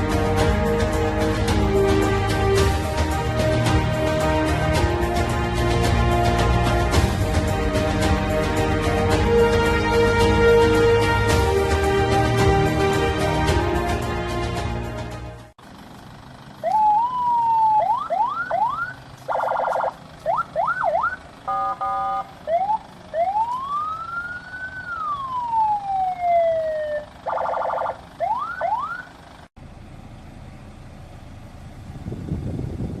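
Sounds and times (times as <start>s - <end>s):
buzzy horn blast: 0.0s - 14.7s
siren wail: 16.6s - 29.2s
siren yelps: 16.6s - 29.2s
steady siren tone: 16.6s - 29.3s.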